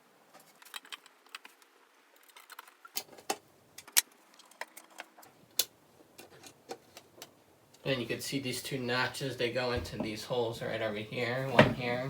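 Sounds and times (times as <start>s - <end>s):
wooden panels being handled: 11.3s - 12.0s.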